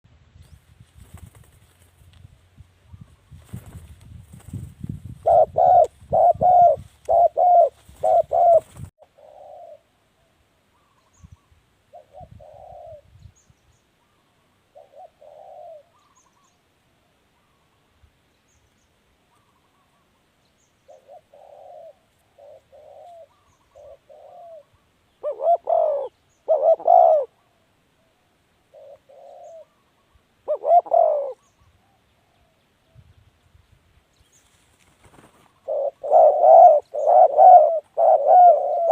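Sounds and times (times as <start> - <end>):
dove cooing: 5.2 - 11.0, 11.9 - 13.1, 14.0 - 16.5, 20.9 - 32.6, 35.2 - 38.9.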